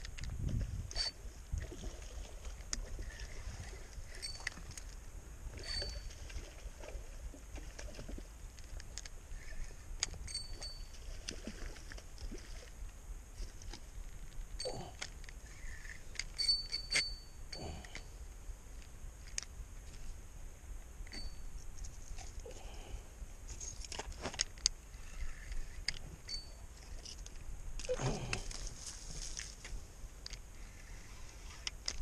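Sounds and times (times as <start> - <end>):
fishing reel clicking: 0.9 - 1.2, 15.0 - 17.2.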